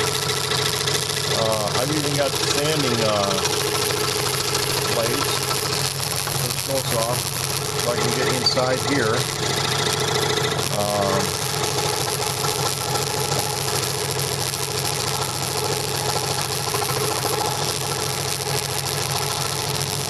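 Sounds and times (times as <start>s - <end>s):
scroll saw cutting wood: 1.4s - 11.4s.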